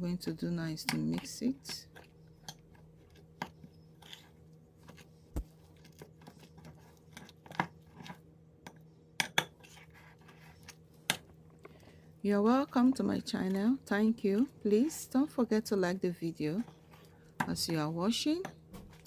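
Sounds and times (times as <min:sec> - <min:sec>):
utensil scraping against bowl: 0:01.0 - 0:08.2, 0:09.5 - 0:10.8.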